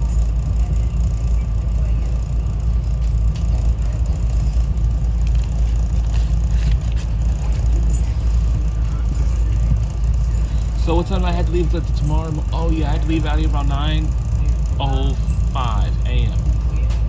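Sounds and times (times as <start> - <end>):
train rumble inside car: 0.0 - 17.0.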